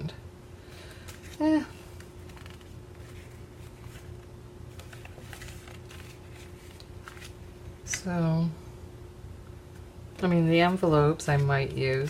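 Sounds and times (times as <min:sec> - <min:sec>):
paper and card rustling: 0:00.8 - 0:08.1, 0:09.8 - 0:12.0.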